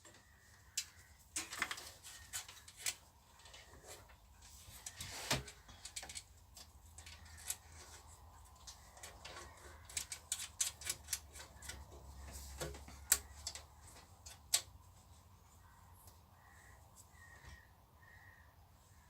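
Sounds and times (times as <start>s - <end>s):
wires and connector clicking: 8.5s - 14.8s.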